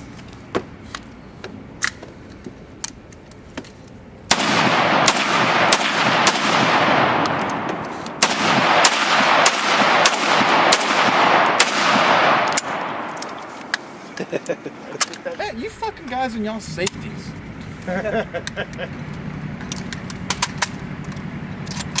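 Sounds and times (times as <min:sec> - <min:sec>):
loud gunshots with echo: 0:04.3 - 0:13.6.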